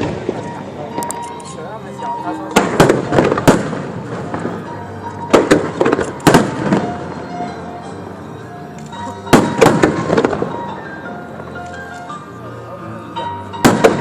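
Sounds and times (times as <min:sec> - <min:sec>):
fireworks bursting in sharp bangs: 0:00.0 - 0:00.8, 0:02.4 - 0:07.4, 0:09.2 - 0:10.8, 0:13.5 - 0:14.0
music playing: 0:00.0 - 0:14.0.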